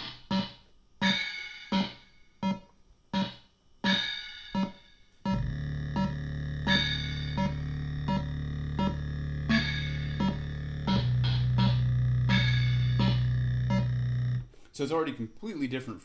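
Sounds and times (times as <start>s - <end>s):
low held synth note: 5.3s - 14.5s.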